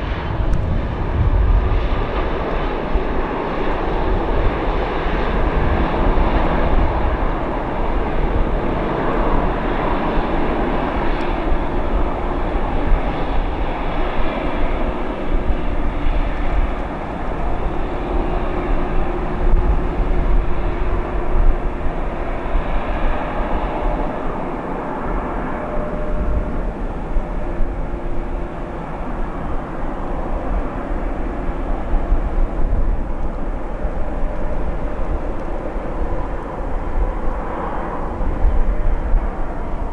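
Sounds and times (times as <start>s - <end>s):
jet engines roaring: 0.0s - 39.9s
faint whining tones: 6.0s - 39.9s.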